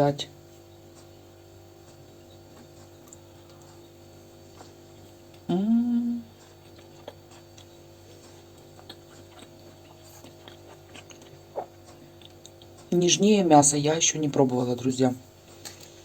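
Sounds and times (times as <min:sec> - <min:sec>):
faint electrical hum: 0:00.0 - 0:16.0
woman humming mmm: 0:05.4 - 0:07.3.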